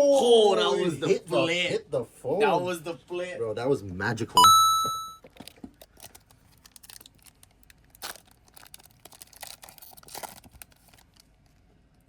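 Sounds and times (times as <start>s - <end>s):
foil wrapper crinkling: 5.3s - 11.7s
foil wrapper ripping: 5.8s - 11.3s.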